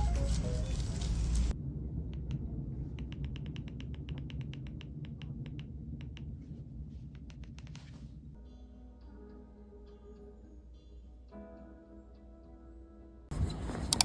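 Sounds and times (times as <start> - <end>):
music: 0.0 - 1.5, 8.4 - 13.4
low hum: 0.0 - 6.9.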